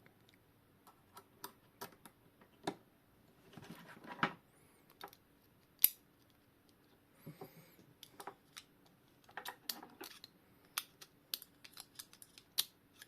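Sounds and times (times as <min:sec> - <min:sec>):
small metal parts clicking: 0:08.0 - 0:13.0.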